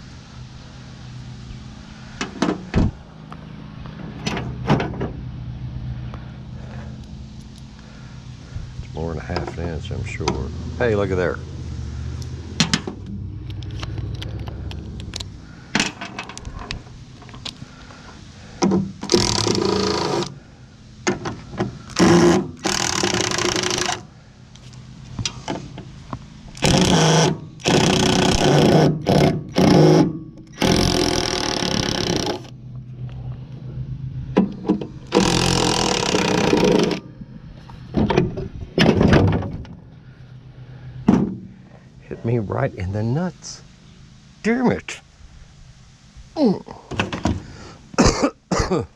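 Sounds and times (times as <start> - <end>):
handheld power tool bursts: 19.0 - 20.4, 21.9 - 24.1, 26.6 - 32.5, 35.1 - 37.0.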